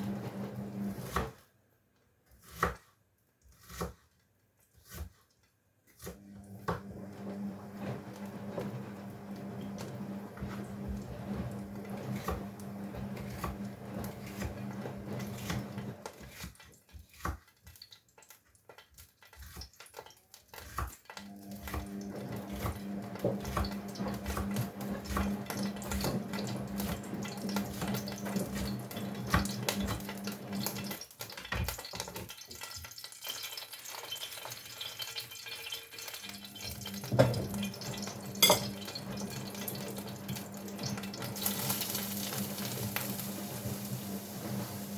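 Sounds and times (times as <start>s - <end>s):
washing machine hum: 0.0s - 1.3s, 6.0s - 16.5s, 20.6s - 32.8s, 35.9s - 44.9s
pots and dishes clinking: 31.4s - 39.8s.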